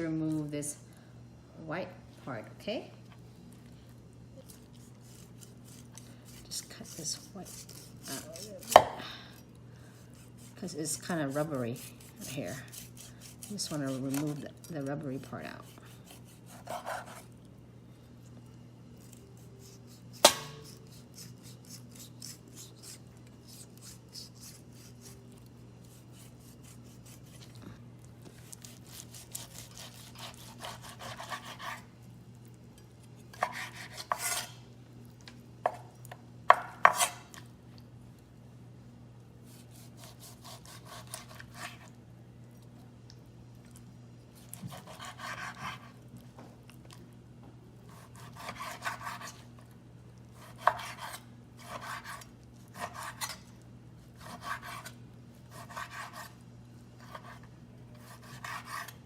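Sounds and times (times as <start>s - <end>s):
knife cutting on cutting board: 15.6s - 17.3s, 28.4s - 31.9s, 33.3s - 34.6s, 36.8s - 37.2s, 44.5s - 46.0s, 47.9s - 49.4s, 50.4s - 53.4s, 54.2s - 56.4s, 57.0s - 59.0s.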